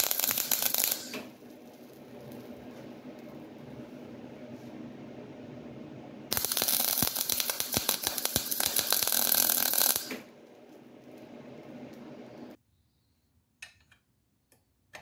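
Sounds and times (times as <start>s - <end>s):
faint steady hum: 10.1s - 12.6s.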